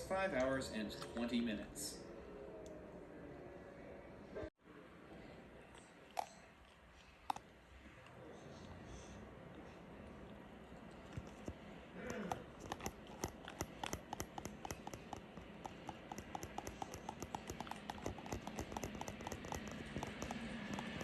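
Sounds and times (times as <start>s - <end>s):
rapid rhythmic clicking: 12.1s - 21.0s.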